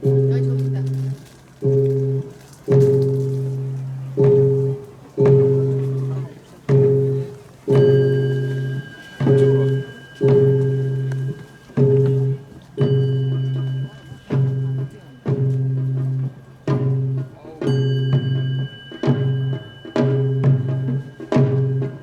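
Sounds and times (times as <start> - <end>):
faint high ringing: 0.0 - 22.0
struck bell ringing: 0.0 - 22.0.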